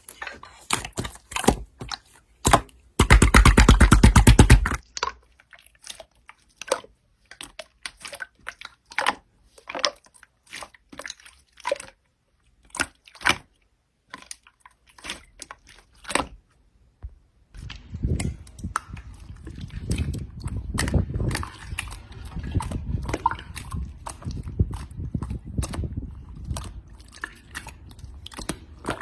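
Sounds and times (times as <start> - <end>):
slime squelching: 0.0 - 29.0
slime popping and crackling: 0.8 - 5.2.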